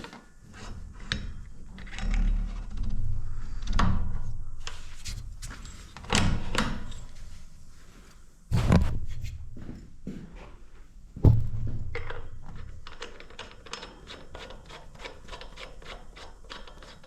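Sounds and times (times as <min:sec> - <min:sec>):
heavy low thuds: 0:08.5 - 0:09.7, 0:11.2 - 0:12.8
knocks and clunks: 0:11.2 - 0:13.0.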